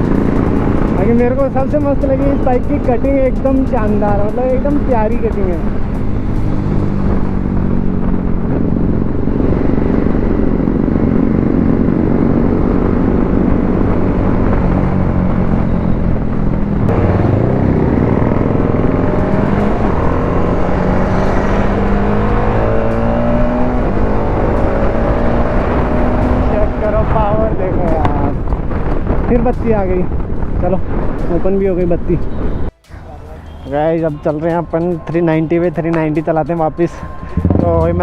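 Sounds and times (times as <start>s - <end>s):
motorcycle engine revving through gears: 0.0s - 1.8s, 5.6s - 27.2s.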